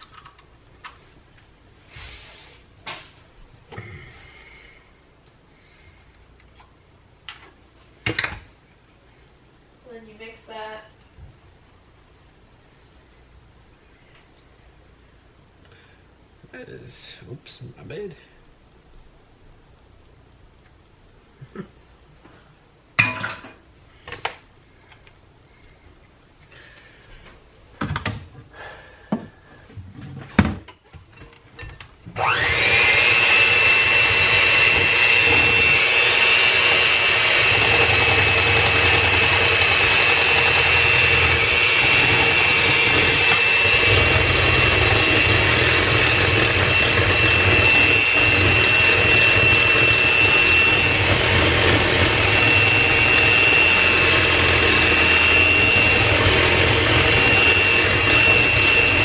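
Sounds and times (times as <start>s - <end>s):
electric mixer whining: 32.1s - 59.0s.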